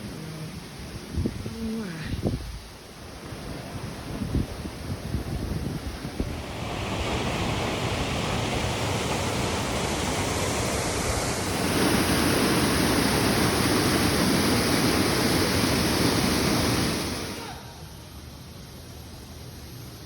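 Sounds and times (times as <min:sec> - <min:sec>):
water rushing: 0:02.6 - 0:17.9.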